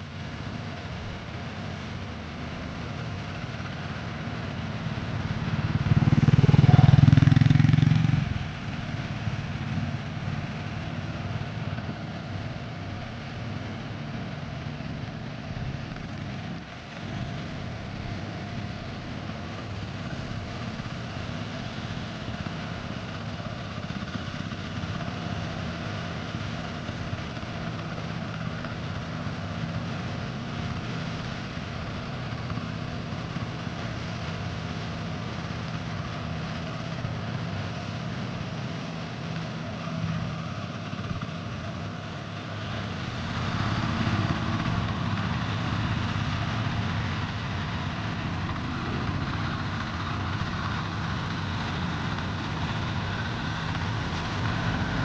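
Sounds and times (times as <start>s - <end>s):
traffic engine rumble: 0.0s - 55.0s
motor vehicle passing: 5.2s - 8.8s, 42.4s - 55.0s.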